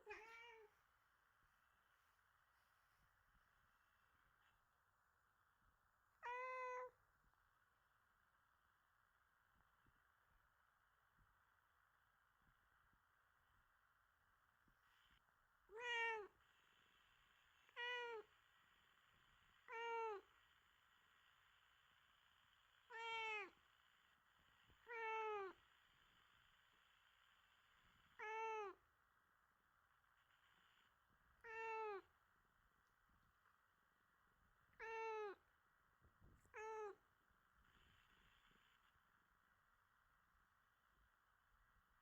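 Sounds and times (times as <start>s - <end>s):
cat meowing: 0.0s - 0.7s, 6.2s - 7.0s, 15.7s - 16.3s, 19.7s - 20.2s, 22.9s - 23.6s, 24.8s - 25.6s, 28.2s - 28.8s, 31.4s - 32.1s, 34.8s - 35.4s, 36.5s - 37.0s.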